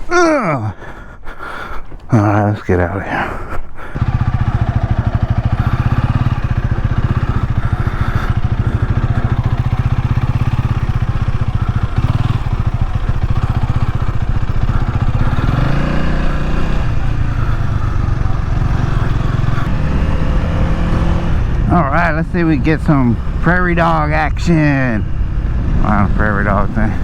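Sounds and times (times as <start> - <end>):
motorcycle engine running: 3.9 - 27.0.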